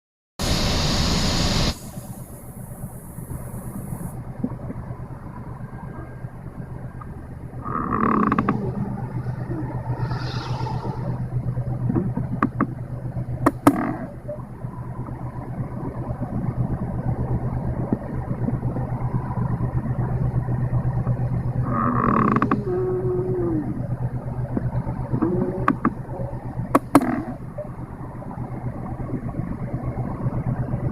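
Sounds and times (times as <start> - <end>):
engine idling hum: 0.4 - 30.9
linkage creaking: 7.6 - 9.4.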